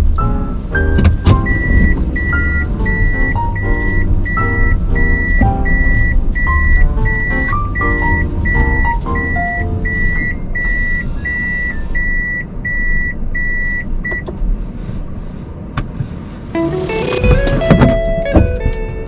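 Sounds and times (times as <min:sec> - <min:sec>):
engine and road rumble: 0:00.0 - 0:12.6
reversing warning beeps: 0:00.9 - 0:14.3.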